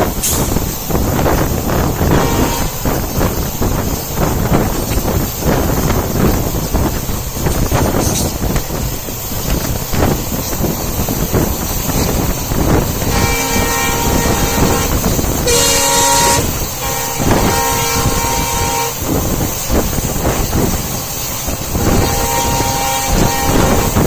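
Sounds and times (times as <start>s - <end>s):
moving train rumble: 0.0s - 24.0s
locomotive air horn blasts: 2.0s - 3.0s, 13.0s - 19.3s, 21.7s - 24.0s.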